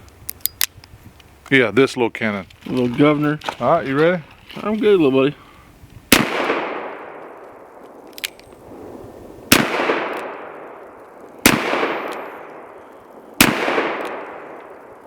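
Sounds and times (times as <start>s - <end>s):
revolver shots with echo: 9.5s - 10.8s, 11.4s - 12.8s, 13.4s - 14.7s.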